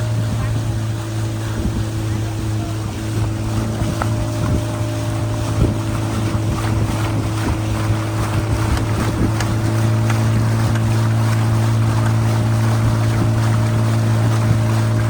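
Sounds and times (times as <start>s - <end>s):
motorboat engine droning: 0.0s - 15.0s
wind buffeting microphone: 0.0s - 15.0s.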